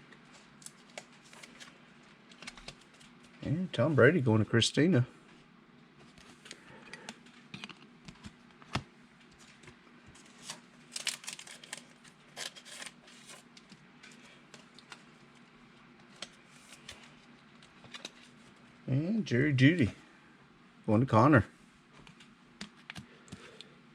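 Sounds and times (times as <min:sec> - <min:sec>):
faint steady hum: 0:00.0 - 0:23.9
cards clicking and rustling: 0:00.4 - 0:03.3, 0:06.2 - 0:15.1, 0:16.0 - 0:18.4.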